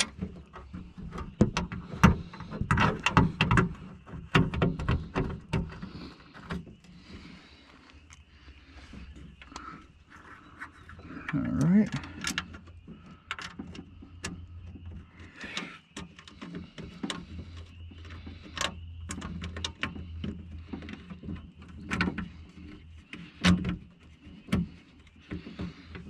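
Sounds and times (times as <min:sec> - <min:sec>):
clicks and knocks of car door parts: 0:00.0 - 0:06.9, 0:15.5 - 0:26.0.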